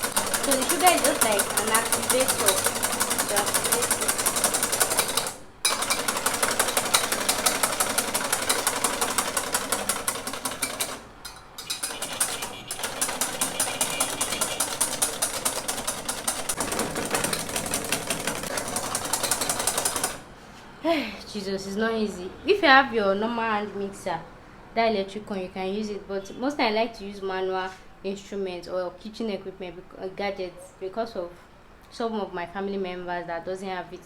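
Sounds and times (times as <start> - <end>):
hand whisk beating in a bowl: 0.0 - 10.8, 11.6 - 20.2.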